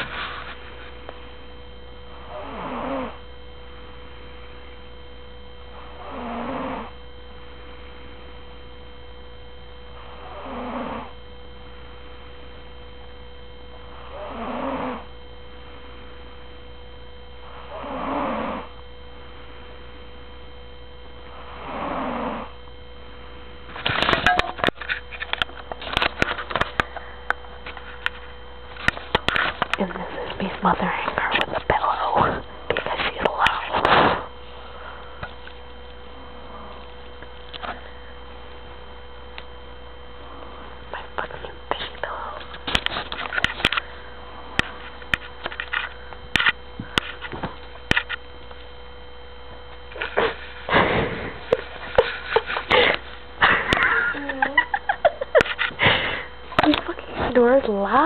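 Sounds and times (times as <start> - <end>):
electrical hum: 0.0 - 58.0
woman snoring: 2.2 - 3.2, 5.7 - 7.0, 10.0 - 11.2, 13.9 - 15.1, 17.4 - 18.7, 21.3 - 22.6.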